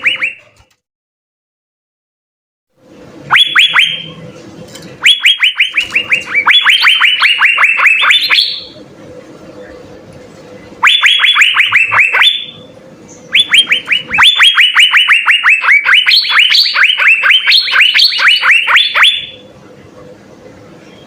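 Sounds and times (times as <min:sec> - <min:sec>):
bird singing rapid notes: 0:05.0 - 0:08.8, 0:10.8 - 0:19.4.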